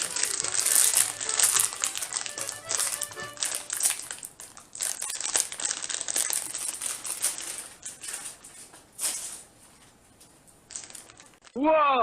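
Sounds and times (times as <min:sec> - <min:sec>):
background music: 0:00.0 - 0:04.1
bag crinkling: 0:00.0 - 0:09.6, 0:10.6 - 0:11.6.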